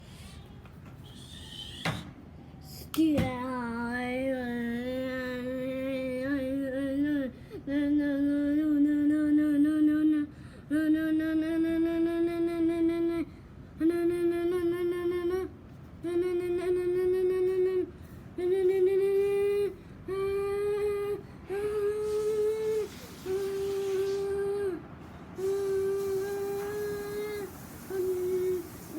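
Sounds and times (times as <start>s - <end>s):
person humming long notes: 25.4s - 28.9s.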